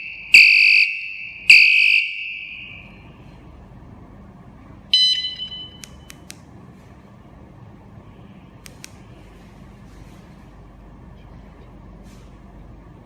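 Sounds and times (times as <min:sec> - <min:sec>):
vehicle alarm beeping: 0:00.0 - 0:03.2, 0:04.9 - 0:06.3
sharp clicks: 0:05.8 - 0:06.5, 0:08.6 - 0:09.0.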